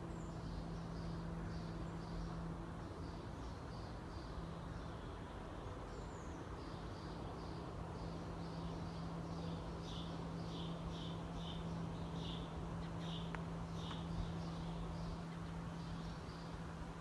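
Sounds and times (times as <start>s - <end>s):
birds chirping: 0.0s - 17.0s
low power plant hum: 0.0s - 17.0s.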